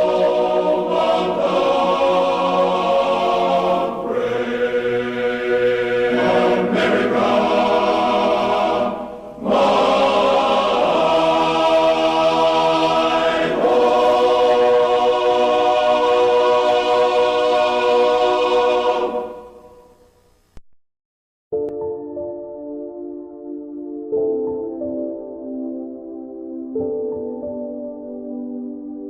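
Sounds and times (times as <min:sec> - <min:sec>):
choral voices sustained chords: 0:00.0 - 0:20.1.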